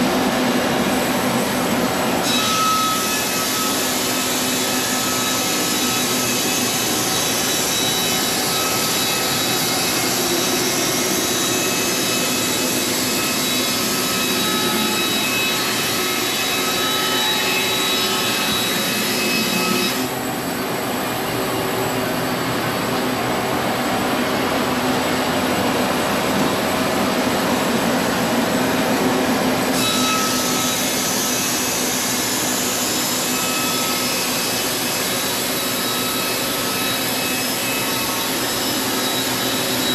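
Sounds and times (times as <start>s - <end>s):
sawmill sawing wood: 2.2s - 20.2s.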